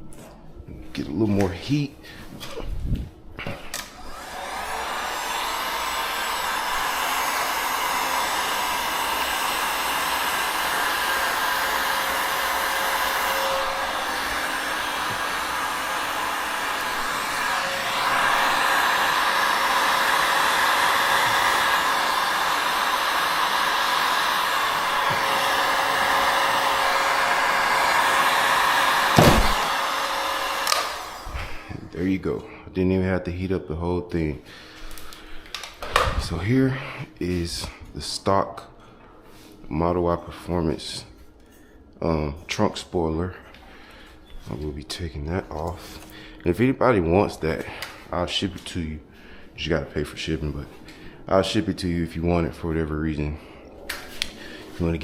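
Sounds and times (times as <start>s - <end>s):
heat gun blowing: 3.7s - 32.0s.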